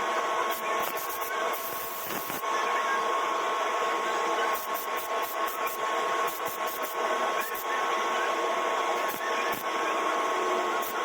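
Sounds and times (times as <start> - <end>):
steady hum: 0.0 - 11.0
paint spray hissing: 0.5 - 2.4, 4.5 - 7.7.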